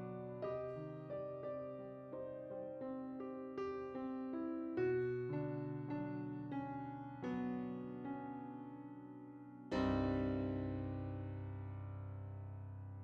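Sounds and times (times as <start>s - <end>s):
slow keyboard melody: 0.0s - 13.0s
deep keyboard chord: 9.7s - 13.0s.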